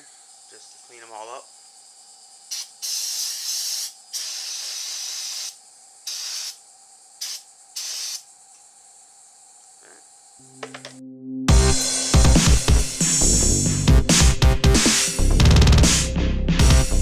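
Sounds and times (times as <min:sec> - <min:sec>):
aerosol can spraying: 0:02.5 - 0:08.8
music: 0:10.4 - 0:17.0.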